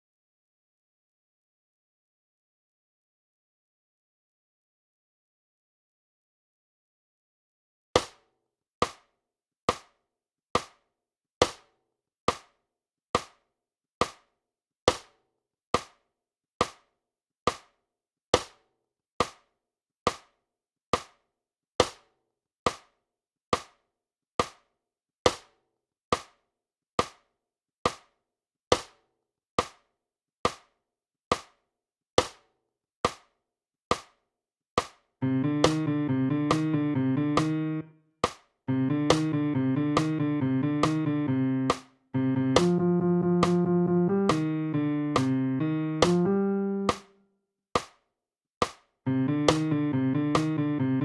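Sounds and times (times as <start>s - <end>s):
metronome clicks: 35.2s - 37.8s, 38.7s - 47.0s, 49.1s - 51.0s.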